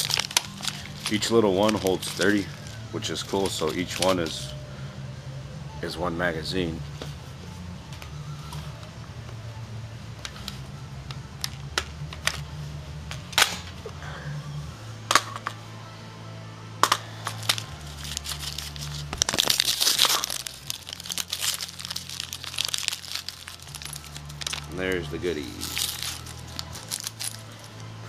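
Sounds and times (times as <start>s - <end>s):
paper packet tearing and crinkling: 0.0s - 4.4s, 17.3s - 27.6s.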